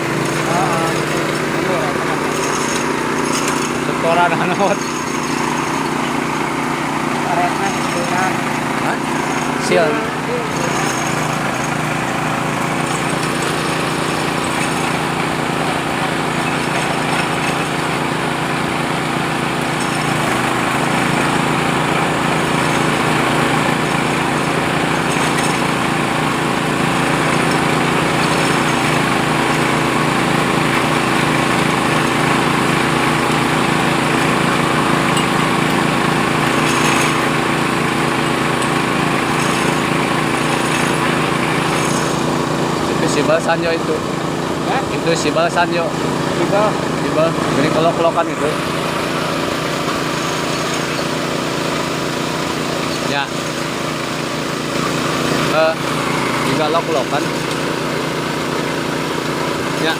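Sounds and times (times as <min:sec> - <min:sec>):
drilling machine motor running: 0:00.0 - 0:59.9.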